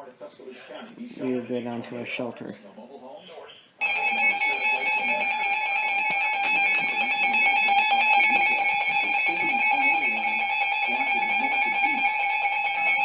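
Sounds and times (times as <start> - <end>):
loud electronic alarm tone: 3.8 - 13.0.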